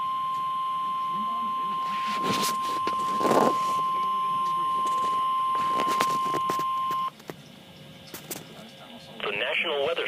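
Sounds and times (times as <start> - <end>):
bursts of static: 1.7 - 7.1.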